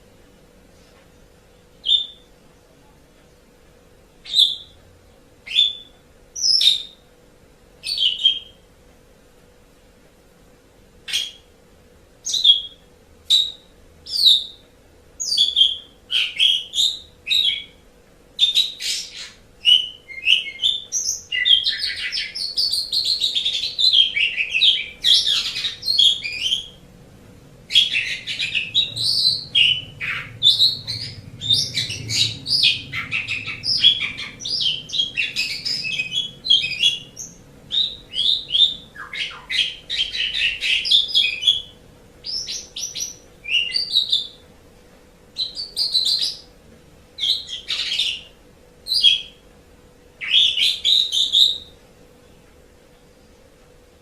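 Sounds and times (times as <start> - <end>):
starling singing: 1.8 - 2.3, 4.2 - 4.8, 5.4 - 7.0, 15.2 - 17.8, 18.4 - 26.9, 27.7 - 44.4, 45.4 - 46.5, 47.2 - 49.4, 50.2 - 51.7.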